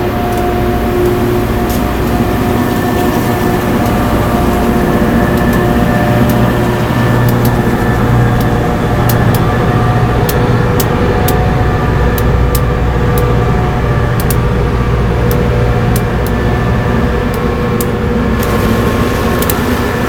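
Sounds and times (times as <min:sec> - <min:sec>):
rail grinder train drone: 0:00.0 - 0:20.0
sharp ticks: 0:03.8 - 0:09.5, 0:14.1 - 0:14.6.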